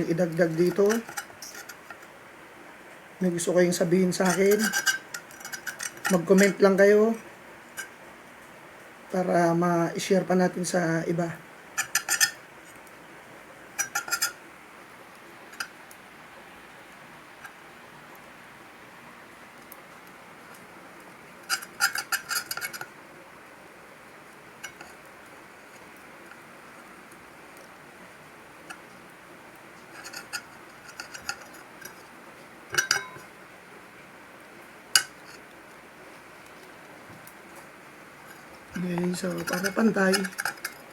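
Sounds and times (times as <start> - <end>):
low steady hiss: 0.0 - 40.9
hard objects clinking: 0.2 - 2.1, 4.2 - 6.6, 11.8 - 12.4, 13.8 - 14.4, 21.5 - 22.9, 29.8 - 32.1, 32.7 - 33.3, 38.2 - 40.9.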